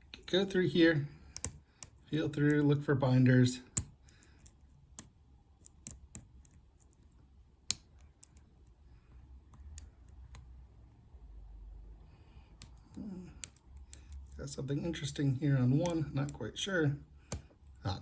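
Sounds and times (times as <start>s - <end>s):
lock pick clicking in lock: 1.3s - 2.6s, 3.7s - 7.1s, 12.5s - 14.4s.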